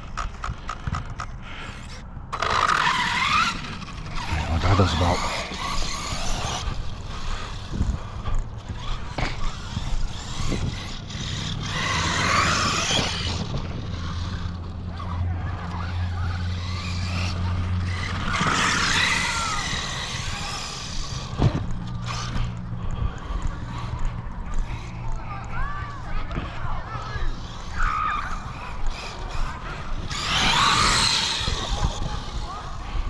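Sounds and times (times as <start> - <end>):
electric motor whining: 2.3 - 24.7, 26.6 - 33.0
tyres scrabbling on dirt: 28.3 - 32.6.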